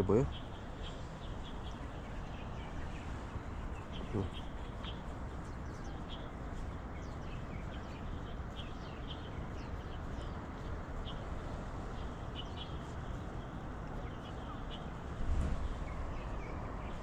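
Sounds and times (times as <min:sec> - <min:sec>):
outdoor background noise: 0:00.0 - 0:17.0
small birds chirping: 0:00.0 - 0:17.0.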